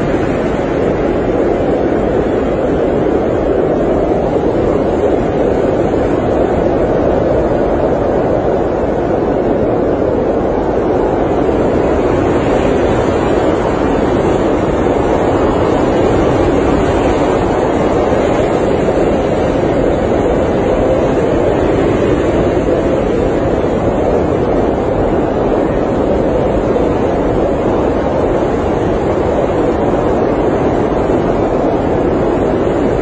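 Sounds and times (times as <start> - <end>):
blizzard wind rushing: 0.0 - 33.0.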